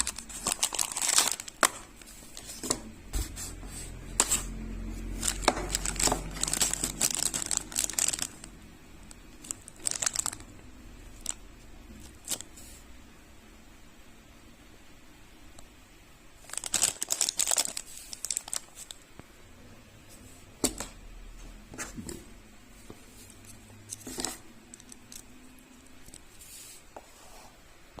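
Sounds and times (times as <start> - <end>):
plastic packaging crinkling: 0.0 - 2.9, 4.0 - 12.6, 16.4 - 19.0.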